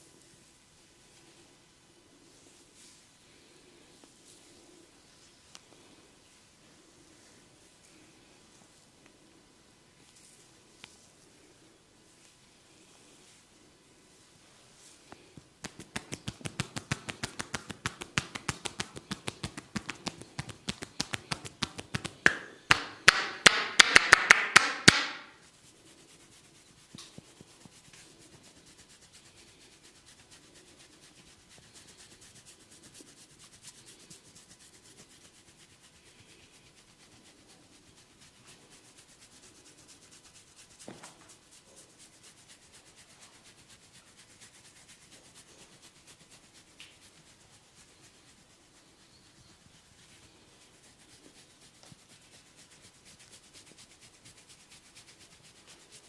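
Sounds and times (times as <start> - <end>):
hands rubbing scalp: 14.8 - 56.0
hair crackling snaps: 15.6 - 25.4.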